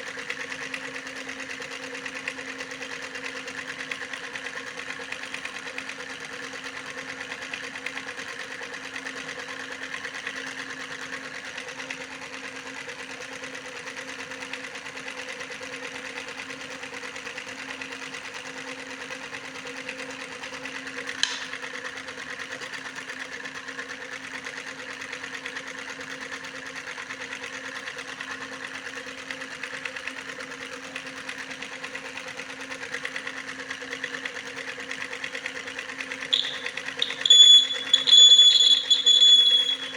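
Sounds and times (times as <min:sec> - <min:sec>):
sharp click: 0:21.2 - 0:21.6
small electric motor humming: 0:36.3 - 0:39.9.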